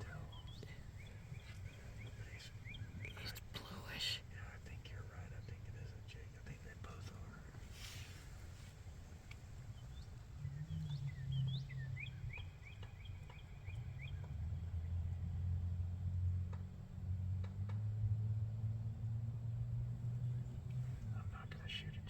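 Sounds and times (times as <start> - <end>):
small songbird chirping: 0.0 - 17.1
steady low hum: 0.0 - 22.0.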